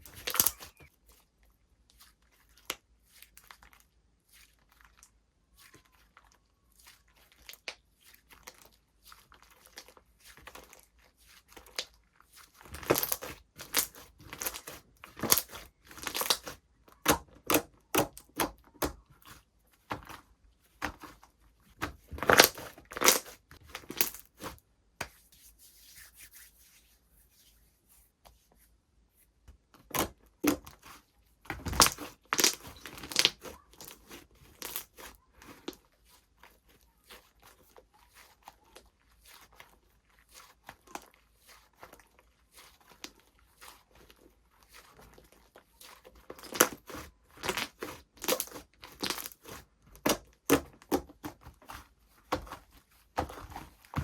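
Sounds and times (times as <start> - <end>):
hands playing with slime: 0.0 - 28.5, 29.4 - 54.0.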